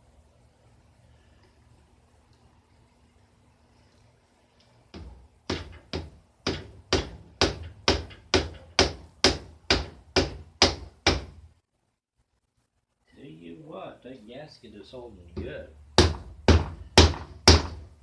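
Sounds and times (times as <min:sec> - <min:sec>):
hammer tapping on engine case: 0:05.0 - 0:11.4.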